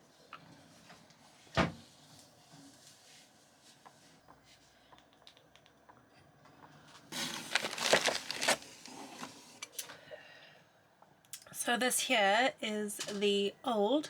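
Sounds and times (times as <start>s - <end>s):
loud crinkling rustle: 7.2s - 8.9s.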